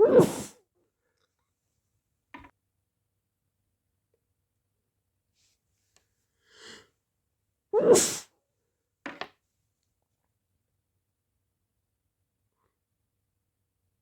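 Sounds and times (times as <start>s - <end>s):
wet human sneeze: 0.0s - 0.6s, 7.8s - 8.3s
faint breath in: 6.4s - 6.9s.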